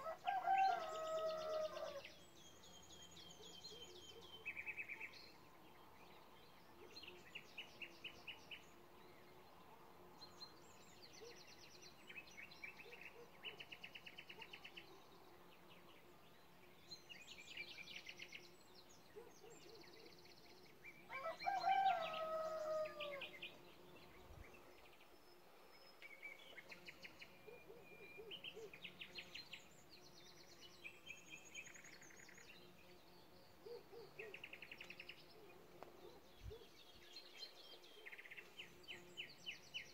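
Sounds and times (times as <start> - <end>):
songbirds trilling: 10.4 - 39.9.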